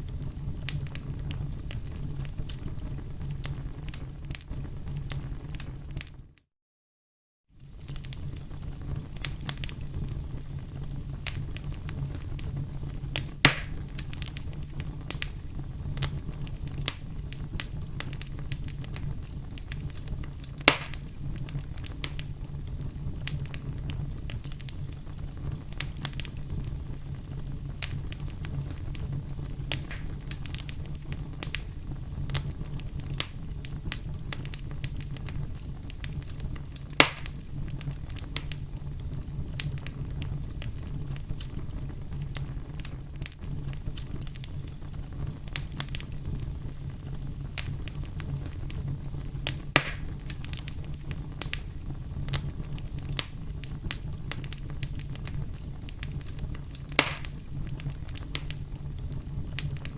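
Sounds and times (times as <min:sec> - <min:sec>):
campfire crackling: 0:00.0 - 0:06.1, 0:07.6 - 0:59.9
loud sharp pops: 0:13.4 - 0:13.8, 0:20.7 - 0:21.1, 0:29.7 - 0:30.5, 0:37.0 - 0:37.4, 0:49.7 - 0:50.4, 0:56.9 - 0:57.4.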